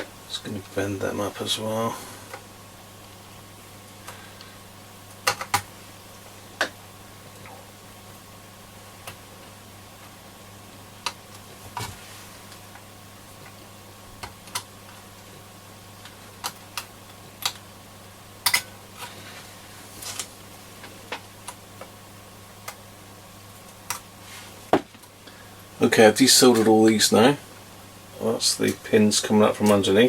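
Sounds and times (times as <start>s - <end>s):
faint steady hum: 0.0s - 30.0s.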